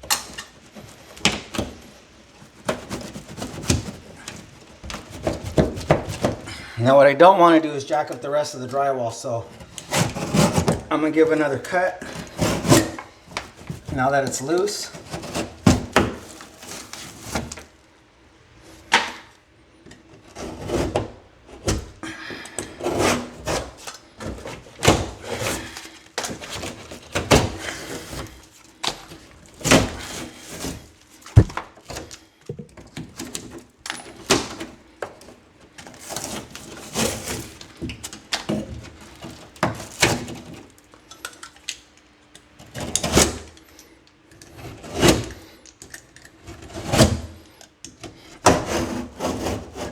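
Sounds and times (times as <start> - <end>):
scrapes and knocks on board: 0.1 - 6.6, 9.5 - 10.9, 11.6 - 17.7, 20.0 - 40.8, 44.5 - 45.6, 46.4 - 49.9
saw rasping through drywall: 9.5 - 14.2, 14.8 - 17.6, 22.6 - 28.5, 29.1 - 31.5, 48.2 - 49.9.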